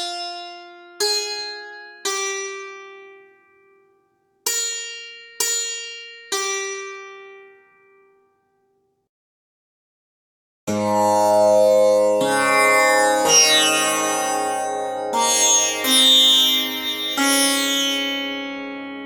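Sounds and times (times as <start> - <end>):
ringing instrument notes: 12.3 - 18.6.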